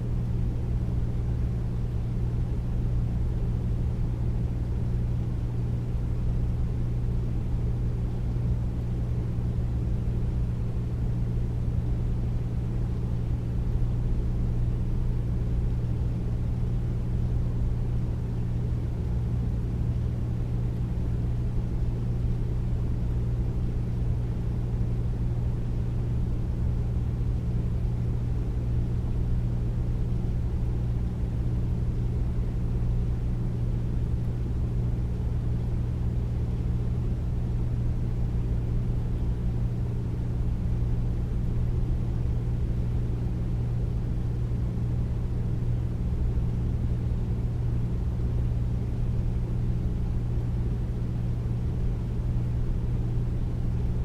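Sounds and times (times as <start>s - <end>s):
air conditioner humming: 0.0s - 54.0s.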